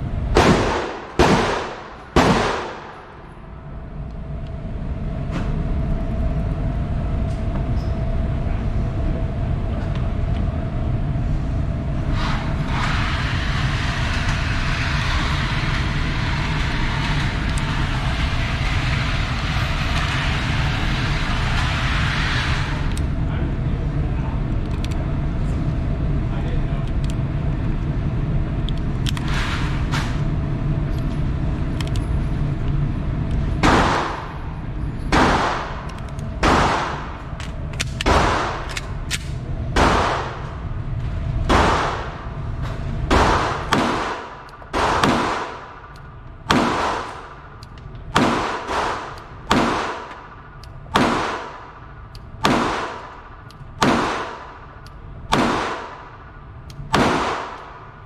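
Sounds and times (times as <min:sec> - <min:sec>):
low steady rumble: 0:00.0 - 0:58.0
gunshots ringing out: 0:00.4 - 0:03.1, 0:33.6 - 0:34.4, 0:35.1 - 0:37.2, 0:38.0 - 0:38.8, 0:39.8 - 0:40.5, 0:41.5 - 0:42.3, 0:43.1 - 0:45.9, 0:46.5 - 0:47.4, 0:48.1 - 0:50.3, 0:50.9 - 0:51.8, 0:52.4 - 0:54.7, 0:55.3 - 0:56.2, 0:56.9 - 0:57.8.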